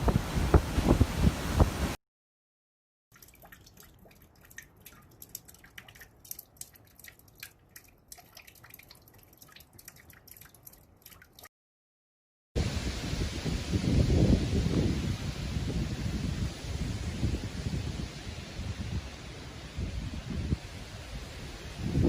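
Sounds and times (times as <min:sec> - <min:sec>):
water dripping: 0:03.1 - 0:11.5.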